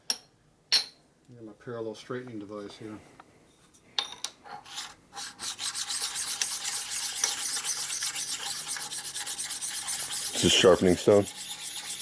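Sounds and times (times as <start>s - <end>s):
metal clink: 0.1s - 1.0s
steel scraping on honing stone: 4.5s - 12.0s.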